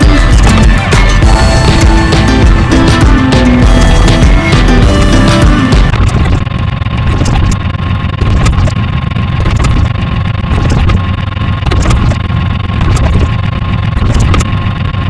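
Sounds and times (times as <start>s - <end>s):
sharp clicks: 0.0s - 1.2s, 8.2s - 8.8s, 9.4s - 11.0s, 11.6s - 12.2s
engine rumbling: 0.0s - 15.0s
steady hum: 0.0s - 15.0s.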